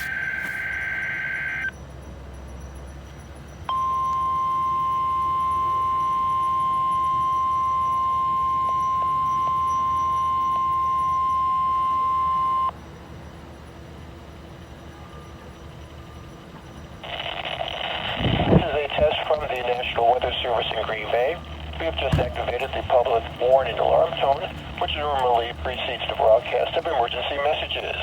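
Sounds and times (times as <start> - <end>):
loud high warning beep: 0.0 - 1.8, 3.7 - 12.8, 16.9 - 28.0.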